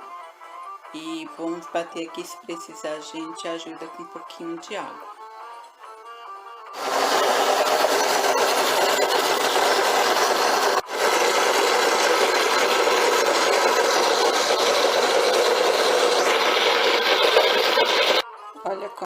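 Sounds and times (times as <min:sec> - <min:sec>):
electric blender grinding: 0:06.6 - 0:18.2.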